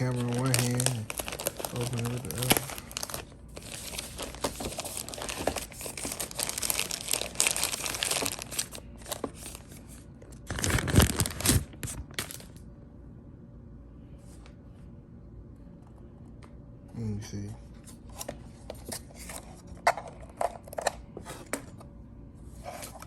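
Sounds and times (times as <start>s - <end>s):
packaging crackling burst: 0.0s - 9.6s, 10.4s - 12.6s
packaging crinkling and rustling: 0.0s - 12.6s.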